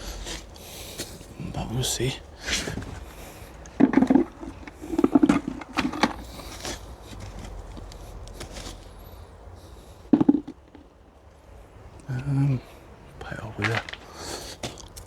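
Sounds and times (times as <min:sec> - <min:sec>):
hands digging through soil: 0:02.4 - 0:09.0.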